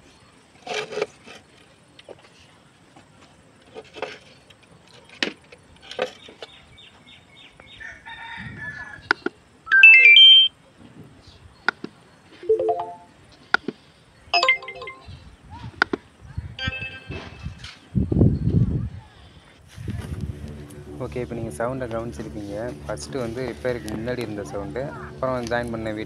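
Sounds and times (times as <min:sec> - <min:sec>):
stepped electronic tones: 0:09.7 - 0:10.5, 0:12.5 - 0:13.1.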